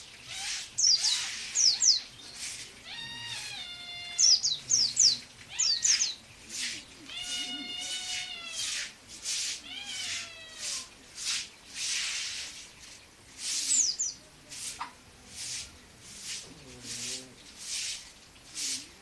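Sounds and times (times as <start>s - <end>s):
bird harsh rasping calls: 0.0s - 10.9s
bird mewing calls: 0.2s - 8.9s.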